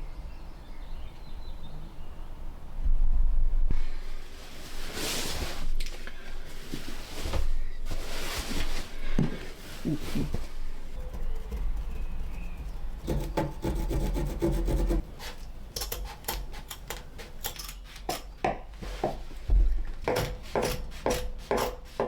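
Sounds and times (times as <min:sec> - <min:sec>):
hand tool rasping on wood: 0:11.0 - 0:15.0, 0:20.1 - 0:22.0.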